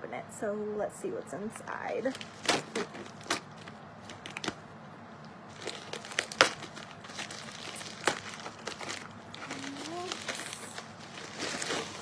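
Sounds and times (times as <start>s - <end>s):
paper packing crinkling: 2.1s - 4.6s, 5.5s - 12.0s.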